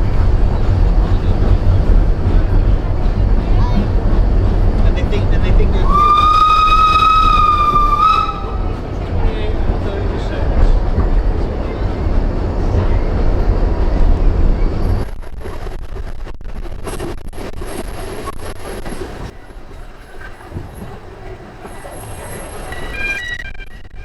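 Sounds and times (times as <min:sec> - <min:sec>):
train rumbling: 0:00.0 - 0:24.0
high wheel squeal: 0:05.8 - 0:08.8.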